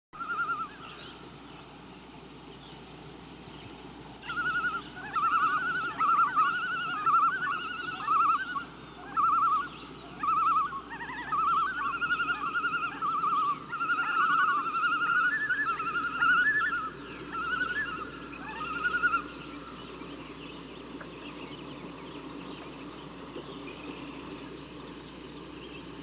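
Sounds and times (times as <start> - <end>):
loons tremolo calls: 0.2 - 1.3, 4.2 - 26.0
faint hiss: 0.2 - 26.0.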